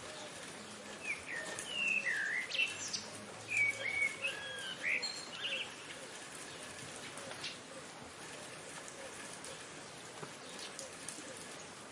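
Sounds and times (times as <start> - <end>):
falling rain hiss: 0.0 - 11.9
whistled bird calls: 1.0 - 5.9.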